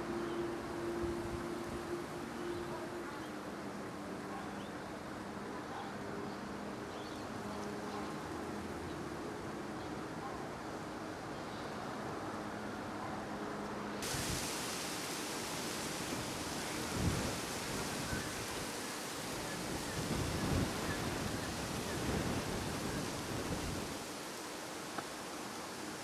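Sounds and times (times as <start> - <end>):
wind blowing over microphone: 14.0 - 24.1.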